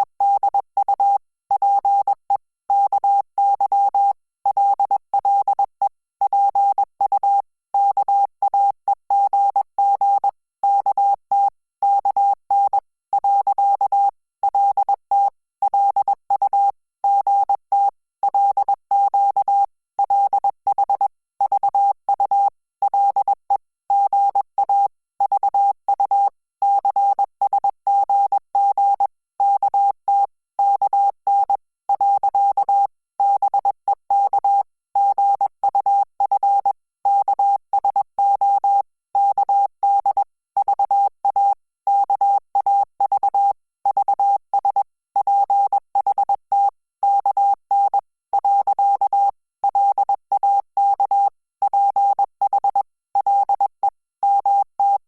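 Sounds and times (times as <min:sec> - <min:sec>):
morse code beeps: 0:50.9 - 0:55.0.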